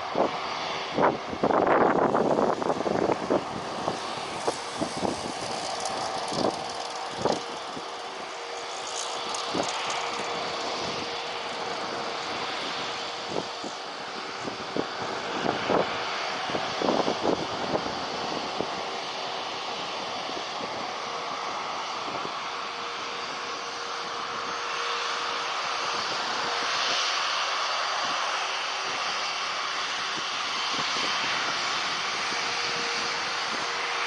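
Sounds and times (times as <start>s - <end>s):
jet engines rushing: 0.0s - 34.0s
high whine: 0.9s - 15.5s.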